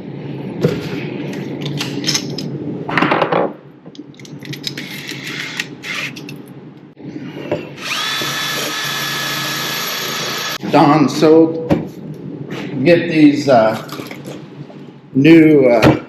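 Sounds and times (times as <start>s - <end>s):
power tool motor whining: 7.8s - 10.6s.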